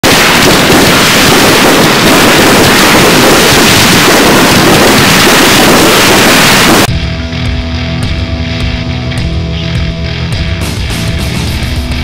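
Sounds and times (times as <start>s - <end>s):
loud steady rushing noise: 0.0s - 12.0s.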